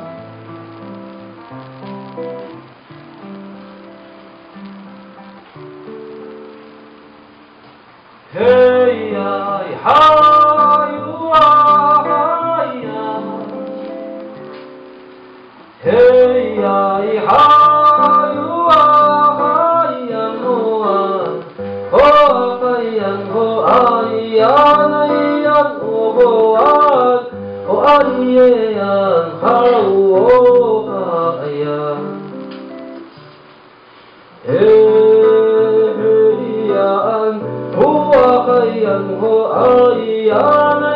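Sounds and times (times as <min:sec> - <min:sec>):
plucked acoustic guitar: 0:00.0 - 0:33.7, 0:34.3 - 0:40.9
person singing folk song: 0:08.2 - 0:14.9, 0:15.7 - 0:33.3, 0:34.0 - 0:40.9.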